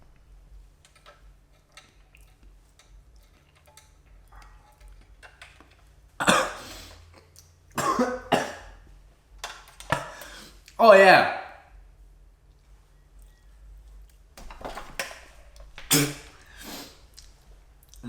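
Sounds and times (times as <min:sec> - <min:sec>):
faint clicks and handling noise: 0:00.0 - 0:06.2, 0:08.9 - 0:10.8, 0:12.4 - 0:18.0
man coughing: 0:06.2 - 0:07.0, 0:07.8 - 0:08.8, 0:09.9 - 0:10.3.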